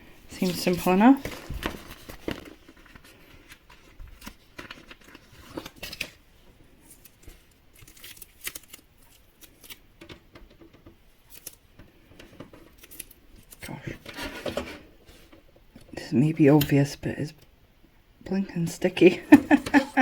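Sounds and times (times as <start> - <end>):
tape crinkling and rustling: 0.3 - 16.0.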